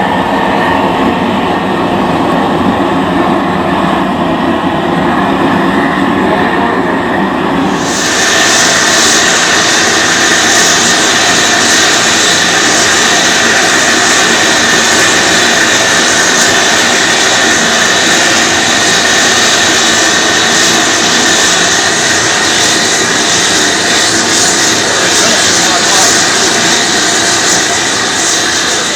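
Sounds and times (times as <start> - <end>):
gas torch hissing: 7.6 - 28.9
high whistle in flame: 7.6 - 28.9.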